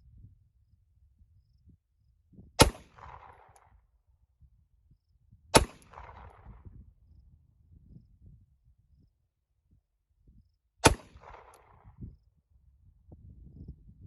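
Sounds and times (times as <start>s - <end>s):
pistol shots with echo: 2.6s - 3.6s, 5.5s - 6.6s, 10.8s - 11.8s.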